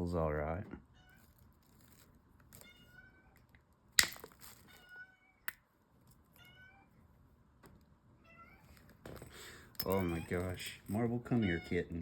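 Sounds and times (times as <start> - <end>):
cat meowing: 11.3 - 12.0.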